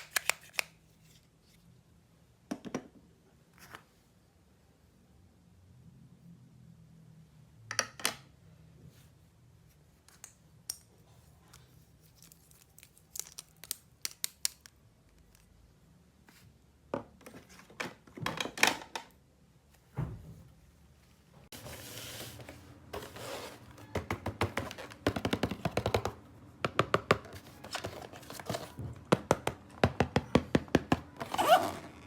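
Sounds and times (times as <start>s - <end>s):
plastic and cardboard crinkling: 11.9s - 15.5s, 21.5s - 26.2s, 27.2s - 29.5s
sharp clicks and snips: 13.2s - 15.5s.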